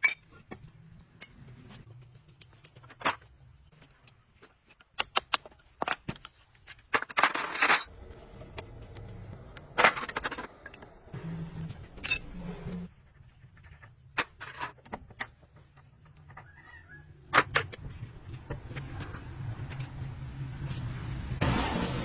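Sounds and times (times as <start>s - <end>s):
sharp clicks and knocks: 1.9s - 7.1s.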